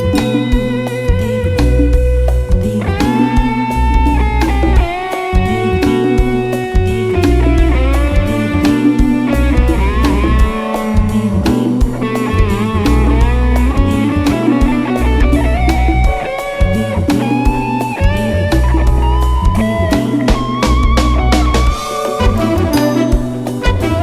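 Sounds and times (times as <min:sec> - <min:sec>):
bass: 0:00.0 - 0:24.0
drum kit: 0:00.0 - 0:24.0
lead electric guitar with bent notes: 0:00.0 - 0:24.0.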